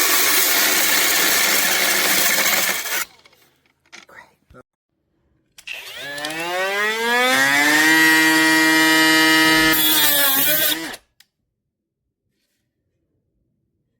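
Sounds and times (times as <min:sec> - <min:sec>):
angle grinder whining: 0:00.0 - 0:03.2, 0:05.6 - 0:11.0.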